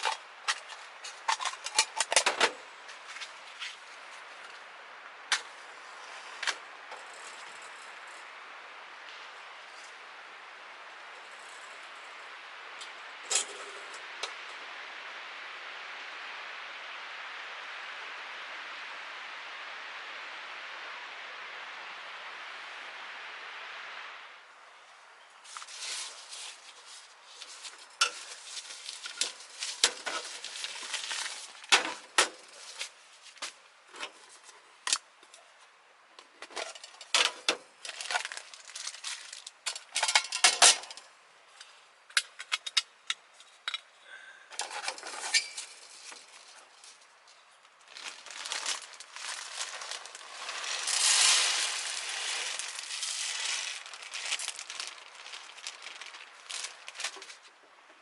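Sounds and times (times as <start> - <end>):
packaging crinkling: 25.5 - 32.0, 47.9 - 57.5.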